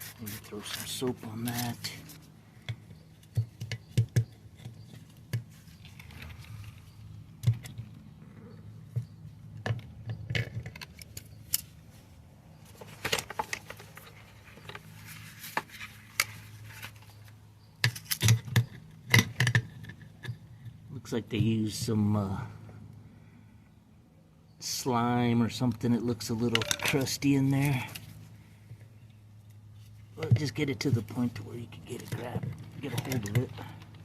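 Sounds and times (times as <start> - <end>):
hand tools clinking on wheel rim: 26.4 - 28.0.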